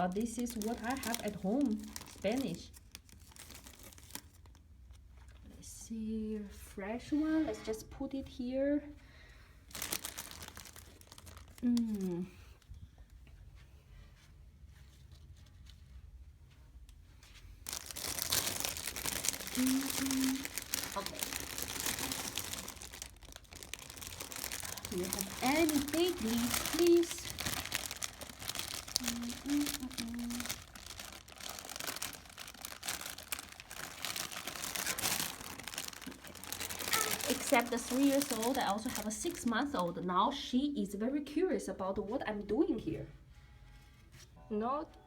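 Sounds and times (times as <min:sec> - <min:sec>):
leafy greens rustling: 0:00.0 - 0:04.6, 0:09.7 - 0:12.3, 0:17.6 - 0:39.9
cabbage leaves tearing: 0:17.7 - 0:39.4.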